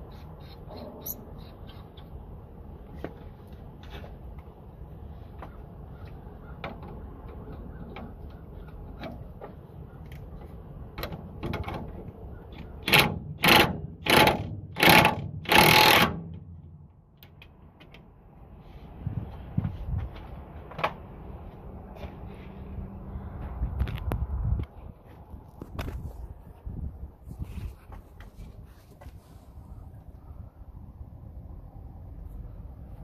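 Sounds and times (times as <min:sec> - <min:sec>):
ratchet wrench ratcheting: 0:12.8 - 0:16.3.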